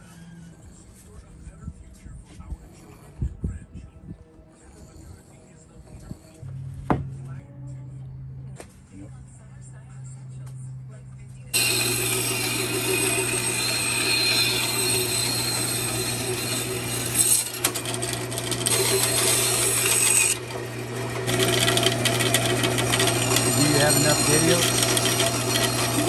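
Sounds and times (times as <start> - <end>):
power saw cutting wood: 11.5 - 26.0.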